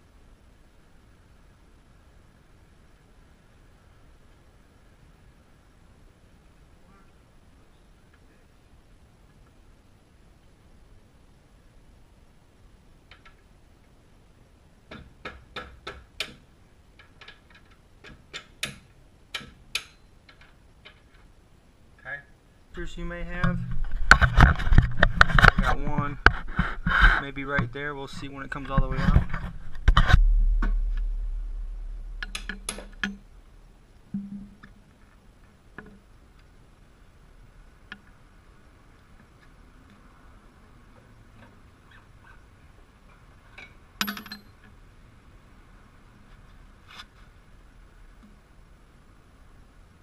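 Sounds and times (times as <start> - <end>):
metallic clicks and knocks: 32.1 - 33.2, 43.6 - 44.7.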